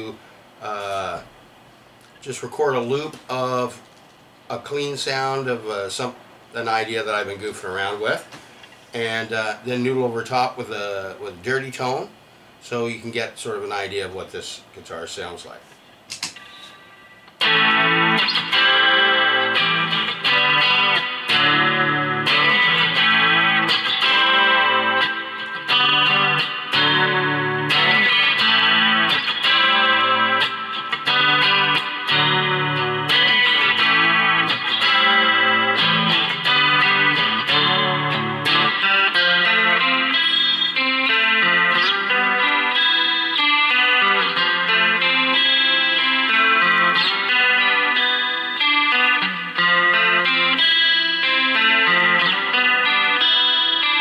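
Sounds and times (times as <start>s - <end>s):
electric guitar through an amp: 16.3s - 54.0s.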